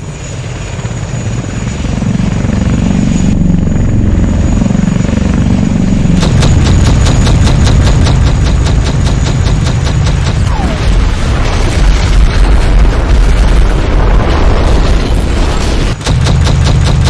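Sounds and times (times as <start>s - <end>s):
heavy explosion rumble: 5.6s - 17.0s
rapid automatic gunfire: 6.2s - 17.0s.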